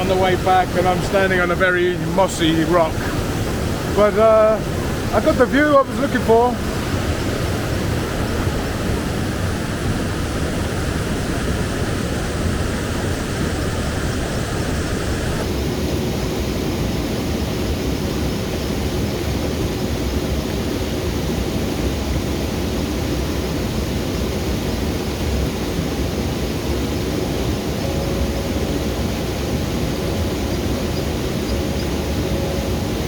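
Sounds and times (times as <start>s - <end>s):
waterfall rushing over rocks: 0.0s - 16.0s.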